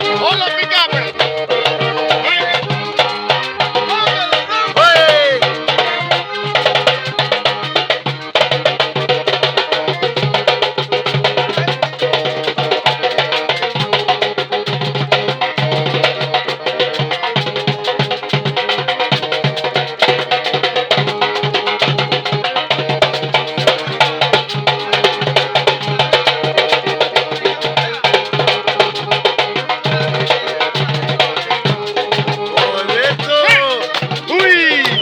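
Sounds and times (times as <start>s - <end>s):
drum in driving rhythm: 0.0s - 35.0s
lively latin music: 0.0s - 35.0s.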